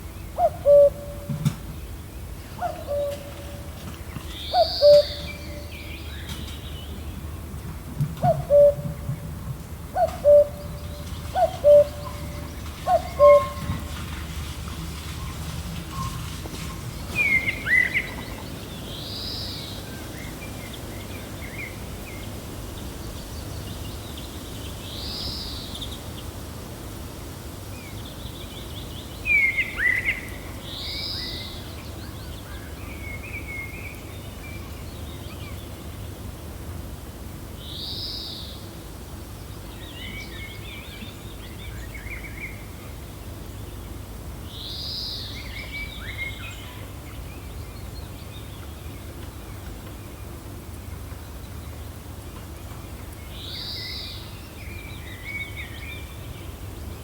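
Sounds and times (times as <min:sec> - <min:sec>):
low wind: 0:00.0 - 0:57.0
birds chirping: 0:01.9 - 0:07.2, 0:10.0 - 0:26.4.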